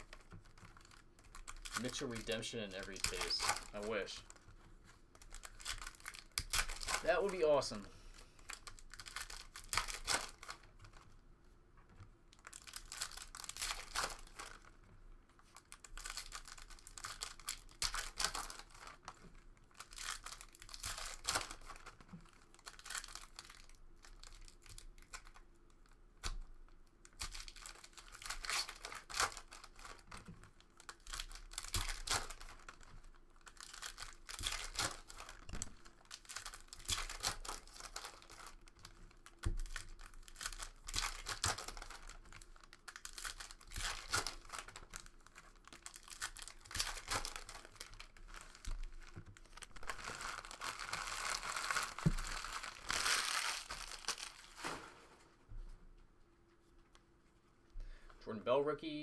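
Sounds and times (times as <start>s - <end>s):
wrappers crinkling: 0.0s - 11.2s, 12.3s - 54.9s
foil packs tearing: 0.8s - 4.3s, 5.3s - 7.8s, 12.4s - 14.7s, 19.7s - 25.4s, 27.1s - 30.1s, 30.8s - 54.9s.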